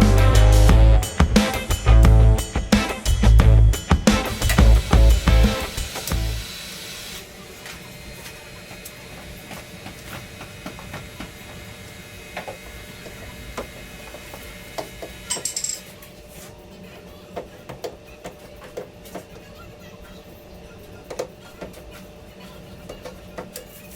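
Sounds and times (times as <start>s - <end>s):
metal tools clicking and knocking: 15.3s - 15.9s.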